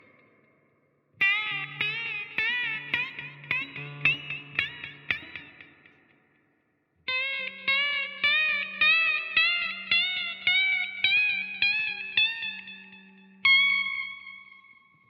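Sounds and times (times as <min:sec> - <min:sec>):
guitar notes picked rising in pitch: 0:01.2 - 0:06.0.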